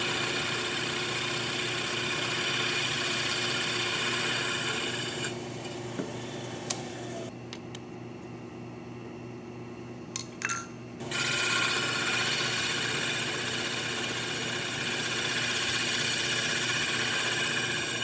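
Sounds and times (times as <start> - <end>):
milling machine running: 0.0 - 7.3, 11.0 - 18.0
cutter cutting metal with ringing: 11.0 - 18.0.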